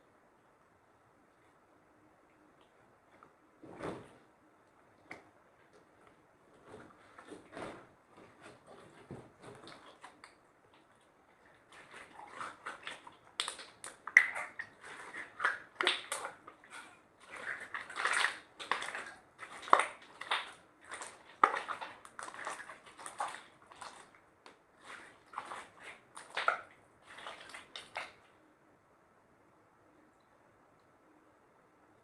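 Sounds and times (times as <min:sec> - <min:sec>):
slime squishing with sticky clicks: 0:12.7 - 0:24.6.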